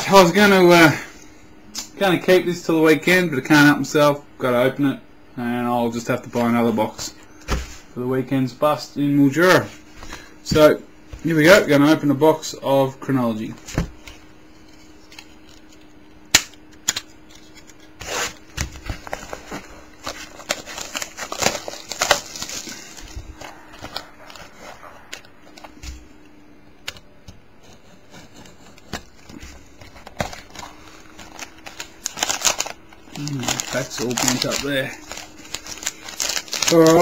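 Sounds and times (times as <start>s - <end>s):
faint steady hum: 0.0s - 37.0s
crinkling packaging and cardboard: 13.8s - 26.2s, 27.7s - 37.0s.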